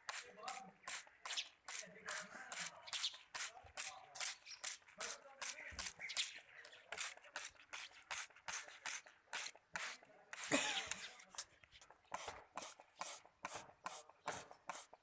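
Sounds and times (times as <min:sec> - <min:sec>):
spray bottle squirts: 0:00.0 - 0:06.3, 0:06.9 - 0:11.5.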